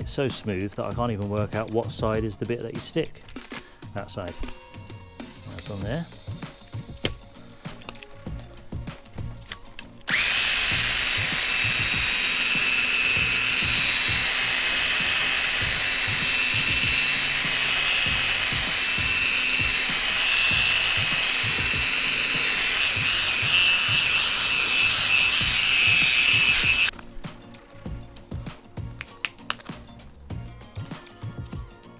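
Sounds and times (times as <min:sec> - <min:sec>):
electric drill sanding plastic: 0:06.5 - 0:27.0.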